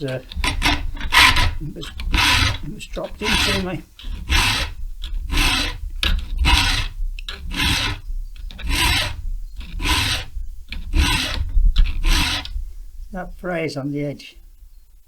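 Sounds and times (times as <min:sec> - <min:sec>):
hand file rasping on chain: 0:00.0 - 0:12.8.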